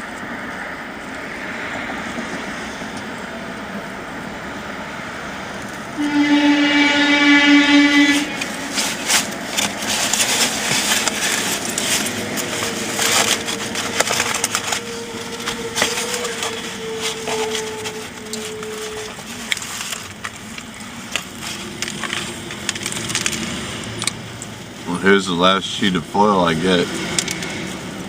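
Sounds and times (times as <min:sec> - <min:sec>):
wrapping material crinkling: 0:07.9 - 0:24.1.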